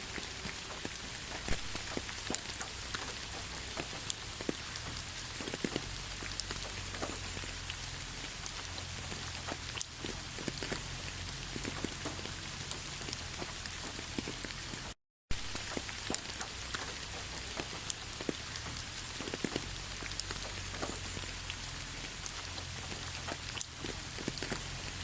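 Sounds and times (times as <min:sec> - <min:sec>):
raindrops ticking on hard surface: 0:00.0 - 0:25.0
steady rain falling: 0:00.0 - 0:25.0.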